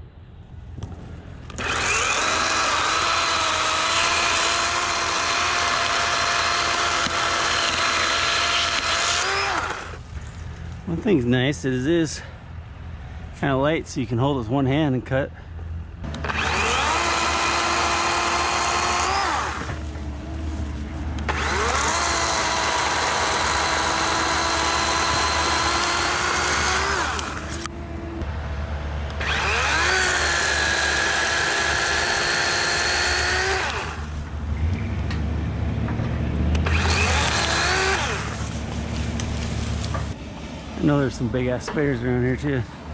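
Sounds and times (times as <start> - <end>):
electric chainsaw cutting brush: 1.5 - 10.0, 16.1 - 20.0, 21.2 - 27.7, 29.2 - 34.2, 36.6 - 40.2.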